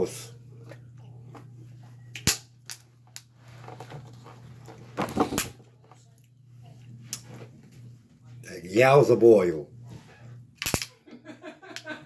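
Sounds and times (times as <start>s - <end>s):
steady low hum: 0.0s - 12.0s
shells cracking while eating: 2.1s - 3.3s, 10.6s - 11.0s.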